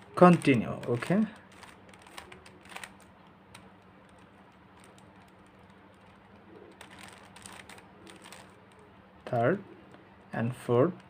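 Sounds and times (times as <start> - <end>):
puzzle cube clicking: 0.0 - 8.9.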